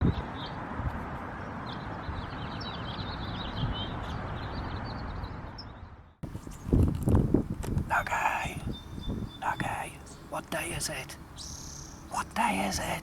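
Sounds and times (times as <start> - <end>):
small birds chirping: 1.3 - 13.0
wind rushing: 3.3 - 9.5.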